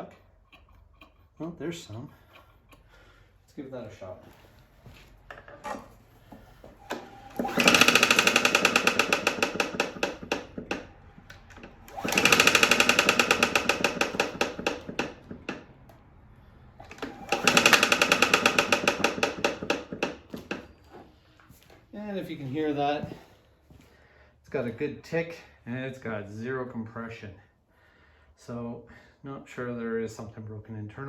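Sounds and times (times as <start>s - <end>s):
engine pull-start ticking: 5.7s - 16.0s, 16.8s - 20.7s.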